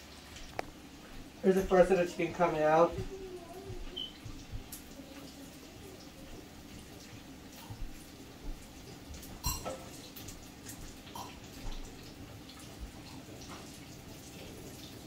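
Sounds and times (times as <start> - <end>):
chicken frying in hot oil: 0.0 - 15.0.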